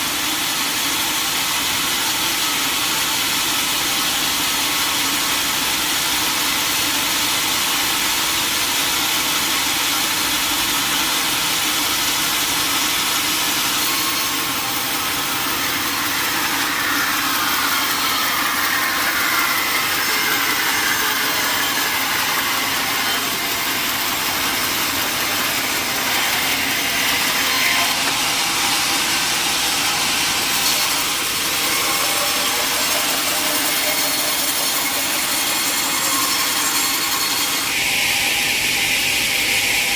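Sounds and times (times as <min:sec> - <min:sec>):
saw blade cutting wood: 0:00.0 - 0:39.0
sawmill machinery drone: 0:00.0 - 0:39.9.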